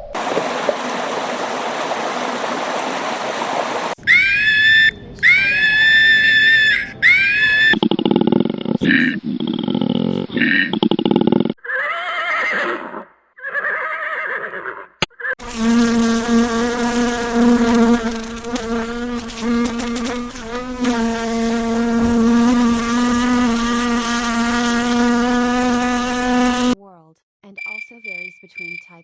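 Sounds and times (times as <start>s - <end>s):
animal calls with wavering pitch: 4.0s - 10.6s
flying insect buzzing: 15.4s - 26.8s.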